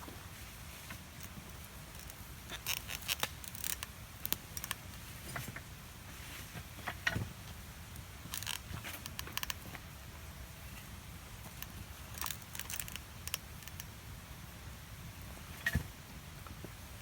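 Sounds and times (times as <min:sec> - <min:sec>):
light clicks and crackles: 0:00.7 - 0:05.7, 0:06.4 - 0:09.9, 0:10.7 - 0:14.0.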